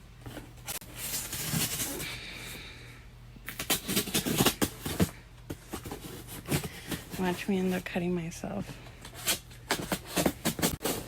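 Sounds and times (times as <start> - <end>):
scissors cutting cardboard: 3.5 - 5.1, 9.1 - 11.0.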